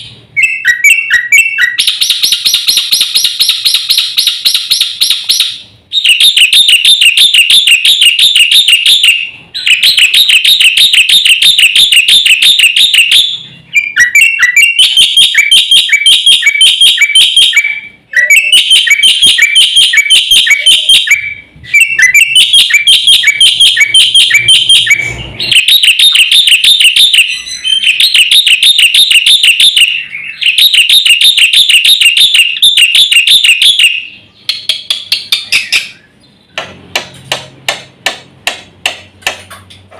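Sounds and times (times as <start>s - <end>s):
songbird singing rapid chirps: 26.4s - 30.8s.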